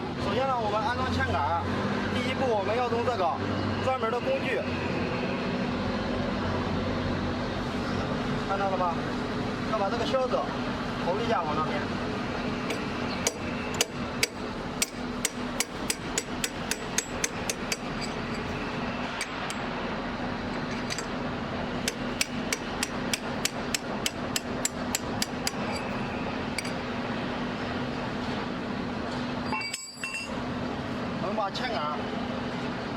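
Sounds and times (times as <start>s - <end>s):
hammer striking metal pin: 12.7s - 18.5s, 19.2s - 19.7s, 21.8s - 26.0s, 26.6s - 26.9s, 29.5s - 30.3s.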